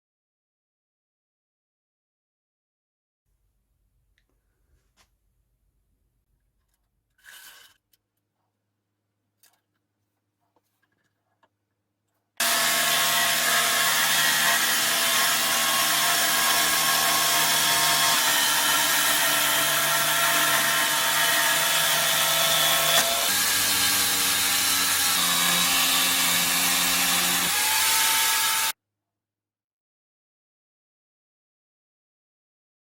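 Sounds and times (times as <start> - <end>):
jigsaw sawing wood: 12.4 - 28.8.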